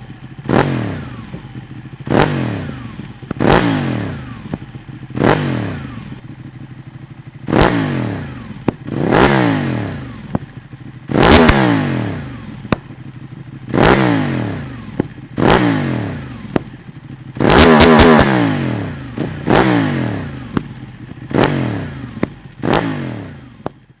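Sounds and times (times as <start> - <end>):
motorcycle engine revving: 0.0 - 24.0
exhaust pops: 0.4 - 6.1, 8.5 - 9.0, 10.2 - 10.6, 12.6 - 13.0, 16.5 - 16.8, 20.5 - 22.9, 23.5 - 23.9.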